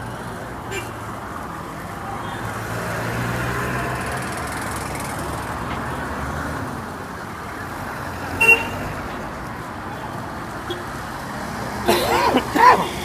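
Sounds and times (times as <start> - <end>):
passing cars and motorcycles: 0.0 - 13.0
car horn toot: 8.4 - 8.9, 10.7 - 10.9.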